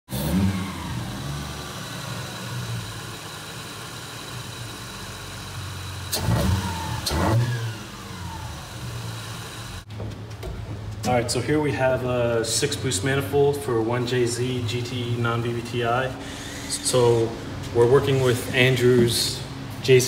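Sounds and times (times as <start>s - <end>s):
car engine idling and revving: 0.1s - 10.0s.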